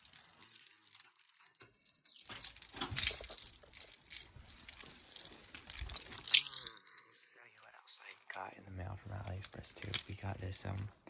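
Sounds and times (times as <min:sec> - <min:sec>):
packaging rustling: 0:02.1 - 0:07.0.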